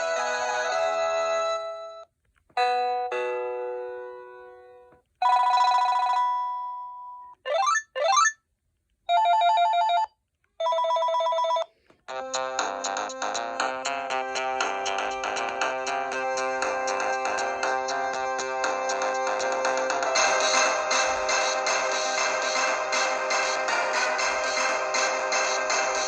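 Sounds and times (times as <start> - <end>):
phone ringtone melody: 0.0 - 8.4, 9.1 - 11.7
warbling phone ring: 5.2 - 6.8, 9.1 - 11.7
trilling phone ring: 5.2 - 6.9, 9.1 - 11.7.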